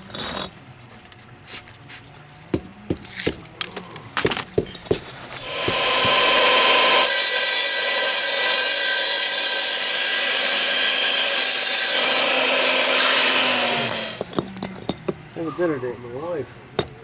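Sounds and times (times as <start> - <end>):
saw blade grinding through paver: 5.0 - 14.8
power saw motor running: 5.4 - 14.3.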